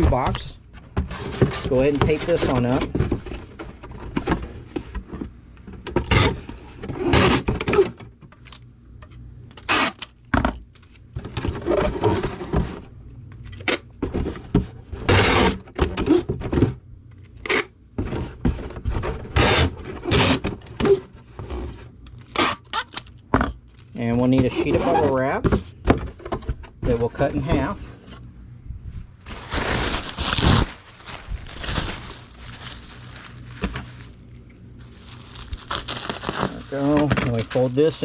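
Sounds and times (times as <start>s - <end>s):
packing tape ripping off roll: 7.0s - 8.6s, 9.5s - 10.2s, 15.0s - 16.2s, 19.4s - 20.5s, 22.2s - 23.1s, 29.3s - 34.2s, 34.9s - 38.0s.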